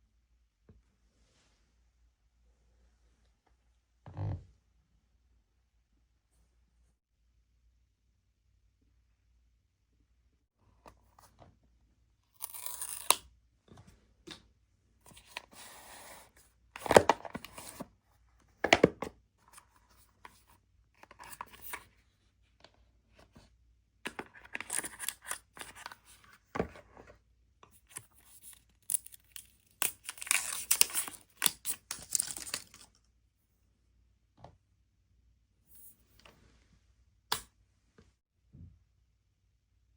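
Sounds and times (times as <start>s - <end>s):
paper packaging tearing: 28.0s - 32.9s.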